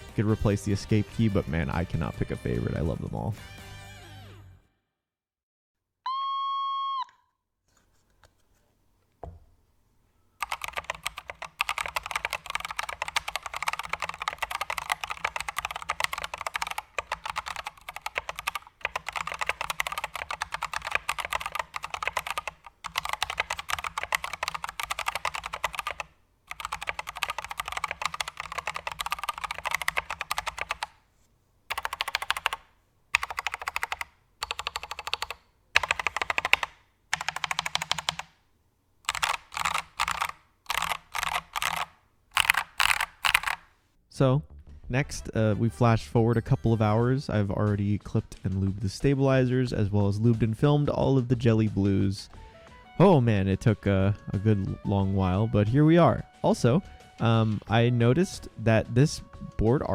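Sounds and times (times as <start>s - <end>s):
mechanical keyboard typing: 10.4s - 31.0s, 31.7s - 38.4s, 39.1s - 43.7s.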